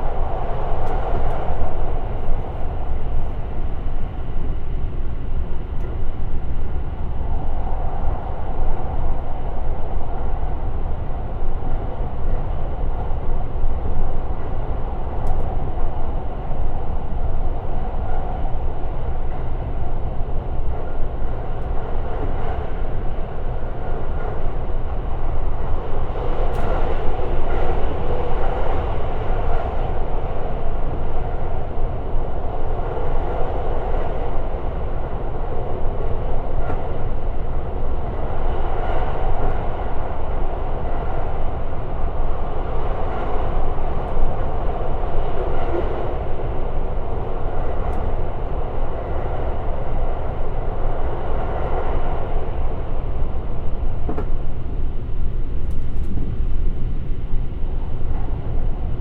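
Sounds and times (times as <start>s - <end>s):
train wheels rumbling on rail: 0.0s - 59.0s
faint rail clicks: 15.1s - 15.6s, 26.3s - 28.8s, 54.0s - 54.4s, 55.6s - 56.4s.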